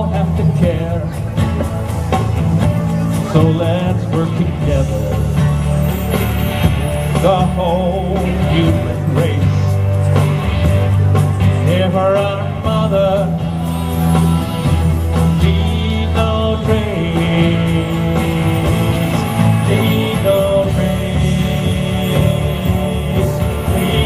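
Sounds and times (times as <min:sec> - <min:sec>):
song with backing music: 0:00.0 - 0:24.0
steady bass: 0:00.0 - 0:24.0
wavering melody line: 0:12.7 - 0:24.0.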